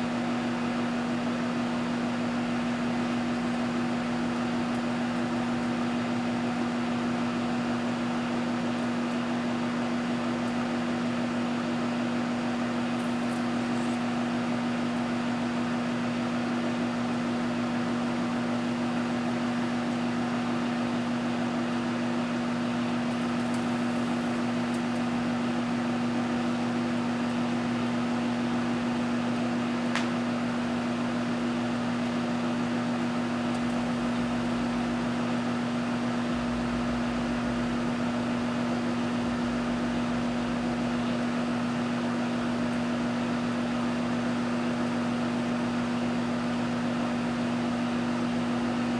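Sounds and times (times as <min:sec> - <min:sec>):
microwave oven humming: 0:00.0 - 0:48.9
fan blowing: 0:20.9 - 0:48.9.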